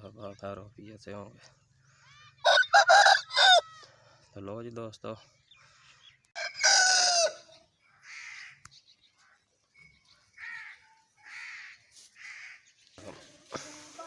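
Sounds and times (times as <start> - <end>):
rooster crowing: 2.4 - 3.8, 6.4 - 7.5
faint short bird calls: 7.5 - 13.0.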